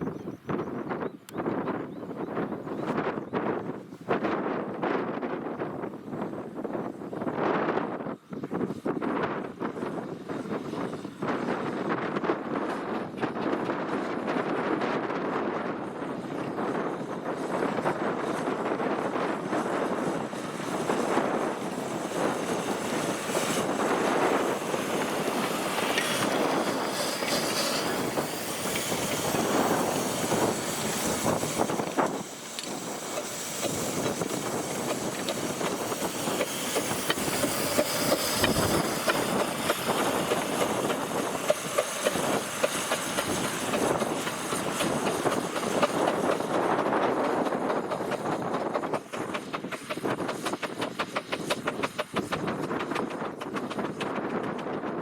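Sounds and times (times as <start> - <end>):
miniature train running: 6.5 - 55.0
wheels clattering over rail joints: 17.1 - 55.0.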